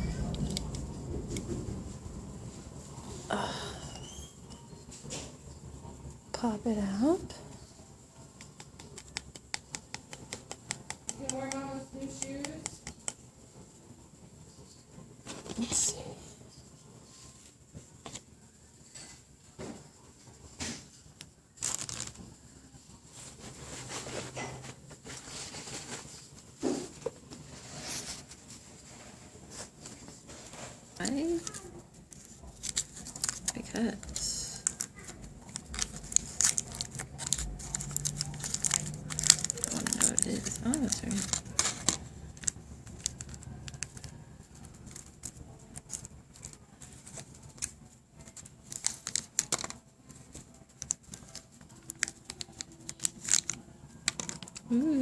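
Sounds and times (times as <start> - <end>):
wrapping crinkling and rustling: 21.5 - 55.0.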